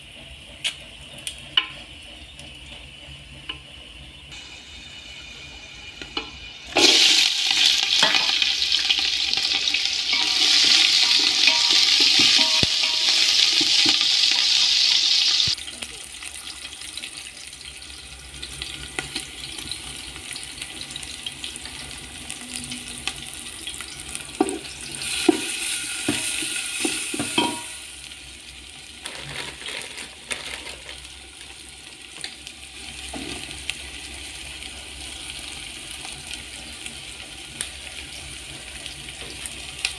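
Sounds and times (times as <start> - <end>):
food sizzling in hot oil: 4.3 - 39.9.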